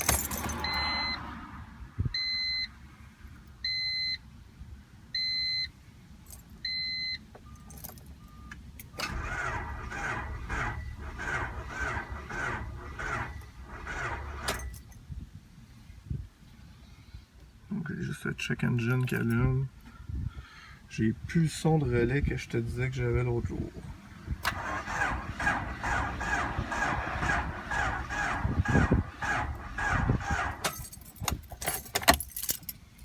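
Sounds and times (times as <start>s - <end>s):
starter cranking engine: 9.0s - 14.7s, 24.4s - 31.4s.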